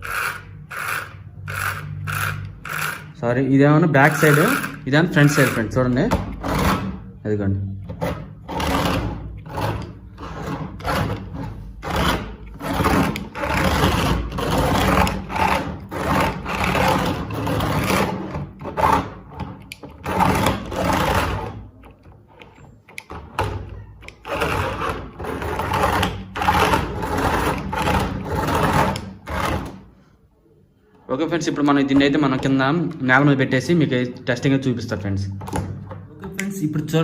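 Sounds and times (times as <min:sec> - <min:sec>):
toy car electric motors whirring: 0:00.0 - 0:03.2, 0:03.9 - 0:07.0, 0:08.4 - 0:23.1, 0:23.7 - 0:29.9.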